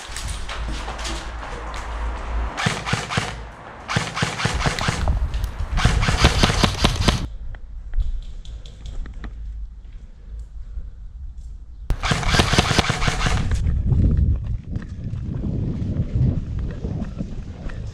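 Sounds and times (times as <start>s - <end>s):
airsoft gun full-auto bursts: 2.6s - 5.1s, 5.8s - 7.3s, 11.9s - 13.6s.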